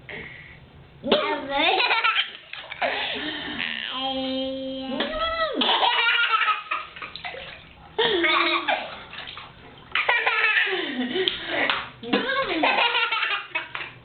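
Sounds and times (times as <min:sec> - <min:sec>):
water splashing in a bathtub: 0:01.2 - 0:14.0.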